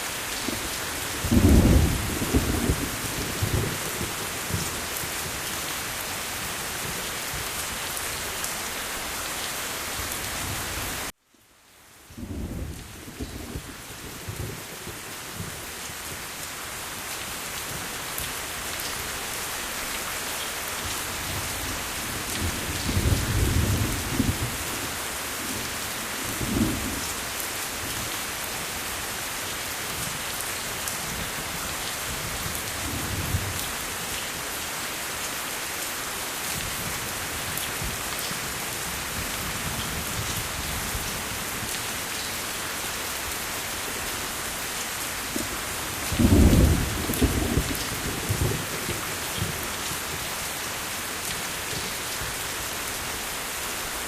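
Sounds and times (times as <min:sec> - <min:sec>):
heavy rain: 0:00.0 - 0:54.0
thunder rumbling: 0:01.2 - 0:04.6, 0:46.1 - 0:48.8.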